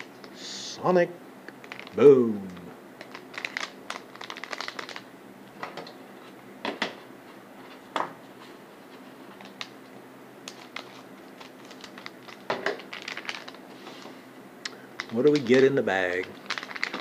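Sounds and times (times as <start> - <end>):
plastic bag crinkling: 1.6 - 2.0, 3.0 - 5.1, 10.5 - 13.8, 14.8 - 17.0.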